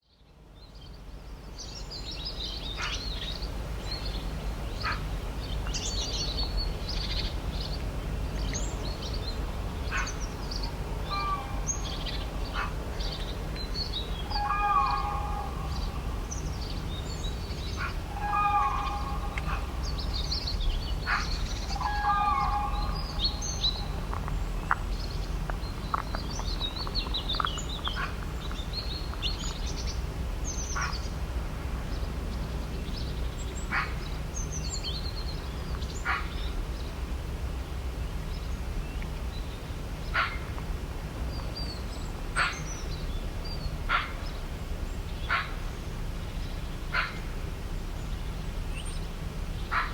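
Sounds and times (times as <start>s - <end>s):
songbirds chirping and trilling: 0.0s - 49.9s
steady low rumble: 1.3s - 49.9s
large bird harsh call: 14.2s - 16.4s, 17.7s - 20.3s, 21.0s - 24.0s.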